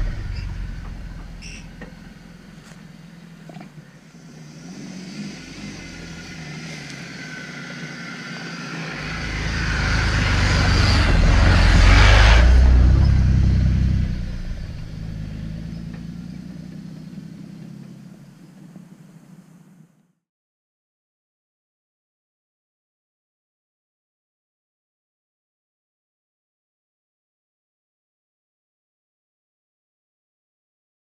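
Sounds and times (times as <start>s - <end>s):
car driving past: 0.0s - 19.6s.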